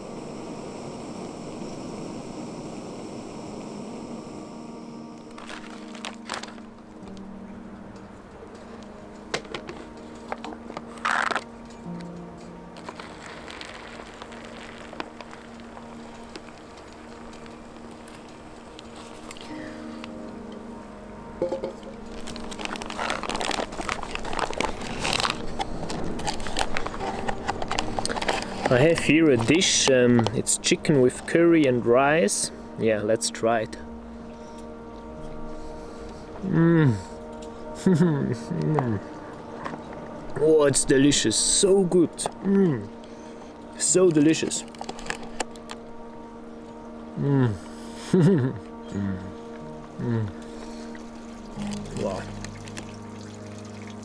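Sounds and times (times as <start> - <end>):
steady rushing noise: 0.0 - 36.4
faint hum: 0.0 - 54.0
soft music of held notes: 0.0 - 54.0
rustling: 5.1 - 7.4, 8.5 - 20.8, 21.7 - 29.6
food packet crinkling: 5.3 - 6.8, 9.5 - 11.5, 12.8 - 19.5, 22.0 - 30.4, 44.1 - 45.9, 50.6 - 53.1.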